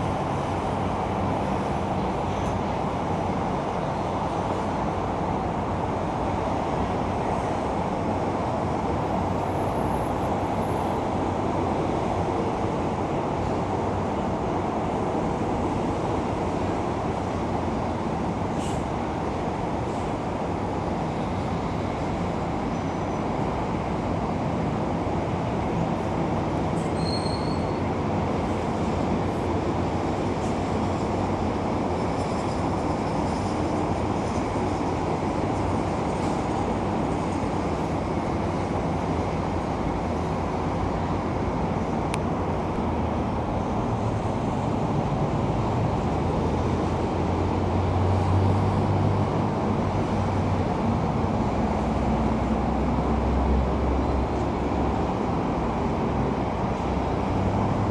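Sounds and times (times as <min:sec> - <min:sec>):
high squeal: 0:26.8 - 0:27.8.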